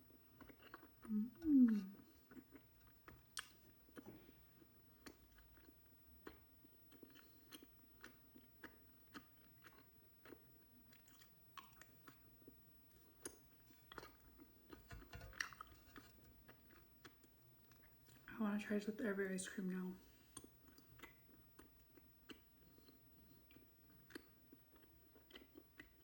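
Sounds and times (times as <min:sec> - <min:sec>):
wet chewing mouth sounds: 0:00.3 - 0:18.3, 0:20.3 - 0:26.0.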